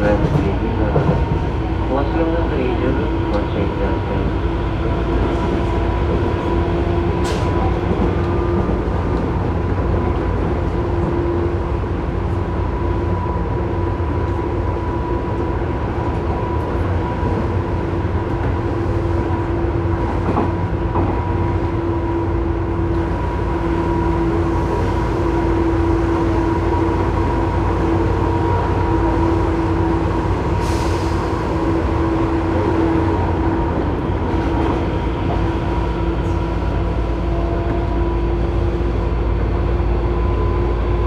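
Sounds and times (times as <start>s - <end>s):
wheel and track rumble: 0.0s - 12.5s.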